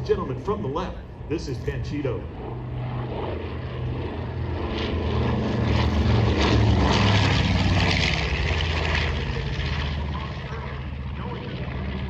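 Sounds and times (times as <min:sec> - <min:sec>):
propeller plane engines droning: 0:00.0 - 0:12.0.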